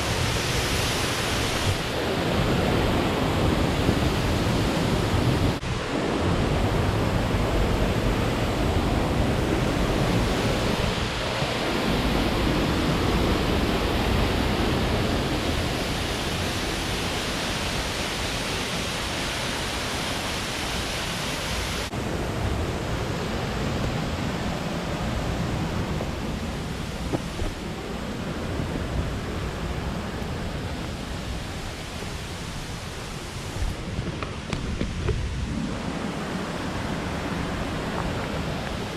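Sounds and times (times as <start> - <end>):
waterfall rushing: 0.0 - 34.6, 35.3 - 38.9.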